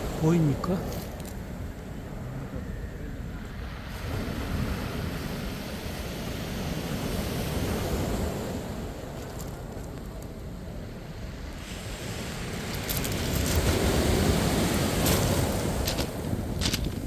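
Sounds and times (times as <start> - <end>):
wind buffeting microphone: 0.0 - 17.0
surf breaking on shore: 3.2 - 9.7, 11.4 - 17.0.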